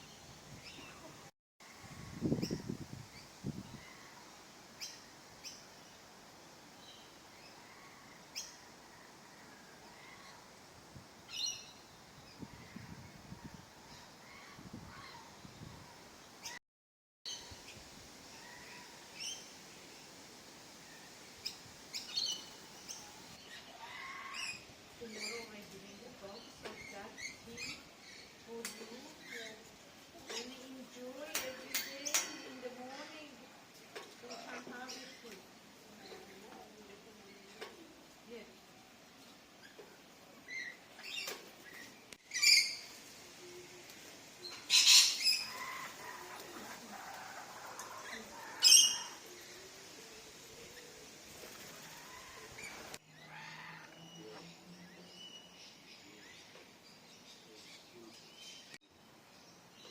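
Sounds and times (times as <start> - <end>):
steady background hiss: 0.0 - 16.6, 17.3 - 59.9
birds chirping: 17.3 - 33.4.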